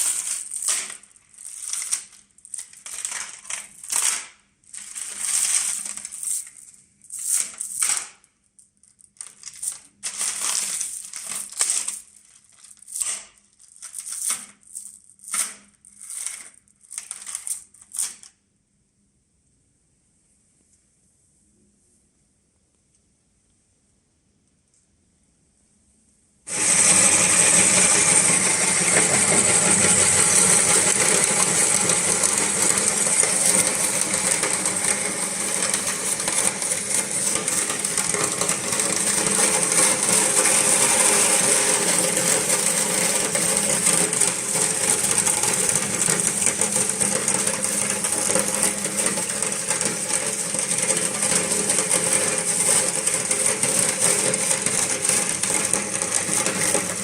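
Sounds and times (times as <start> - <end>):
plastic balls cracking: 0.0 - 8.3, 9.0 - 18.3, 26.6 - 57.0
meat grinder motor hum: 26.5 - 57.0.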